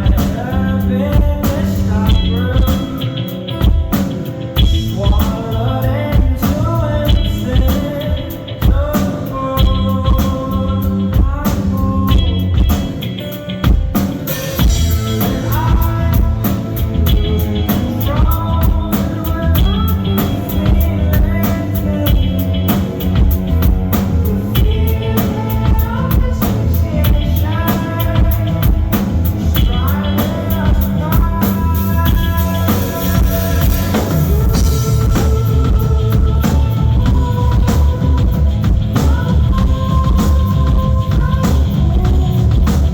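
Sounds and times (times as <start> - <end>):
live rock band playing: 0.0 - 42.9
person singing: 0.0 - 42.9
cymbals washing: 31.5 - 35.8.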